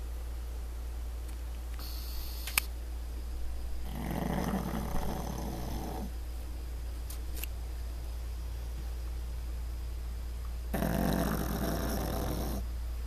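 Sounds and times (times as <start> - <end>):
short hiss ending in click: 1.7 - 2.7
dog snoring: 3.8 - 6.2, 10.7 - 12.7.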